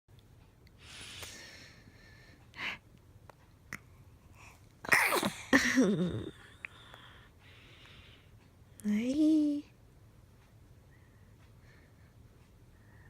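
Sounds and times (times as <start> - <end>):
baby sneezing: 4.9 - 5.7.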